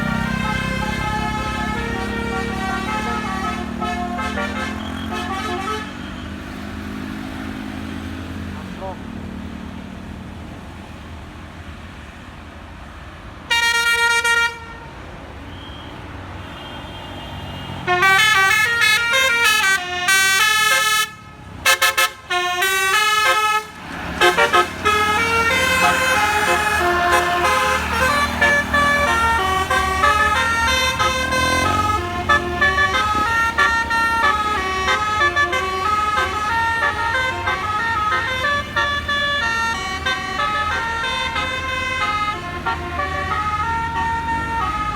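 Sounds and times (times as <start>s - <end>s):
musical air horn notes: 0.2s - 6.2s, 17.9s - 44.9s
low engine rumble: 23.5s - 44.9s.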